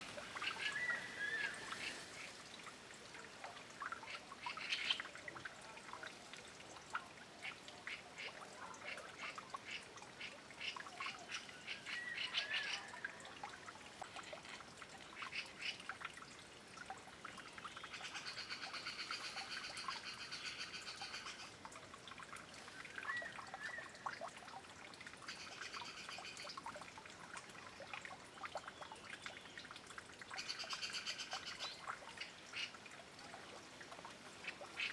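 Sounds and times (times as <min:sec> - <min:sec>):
stream trickling: 0:00.0 - 0:34.9.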